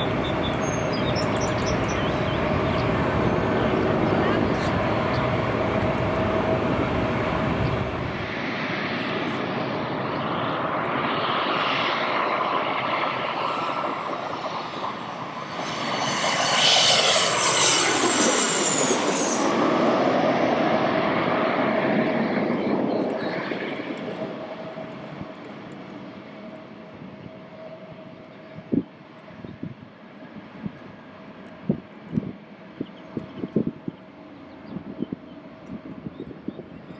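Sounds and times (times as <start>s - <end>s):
jet airliner passing: 0.0s - 29.4s.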